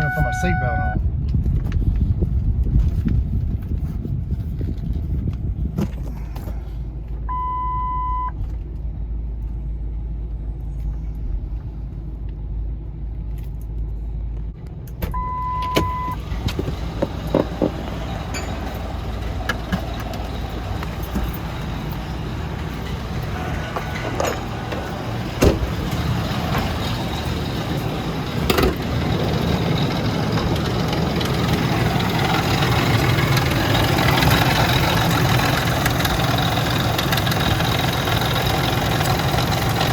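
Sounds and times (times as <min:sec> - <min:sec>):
warning chime beeps: 0:00.0 - 0:01.0, 0:15.2 - 0:16.2
truck engine running from cabin: 0:00.0 - 0:39.9.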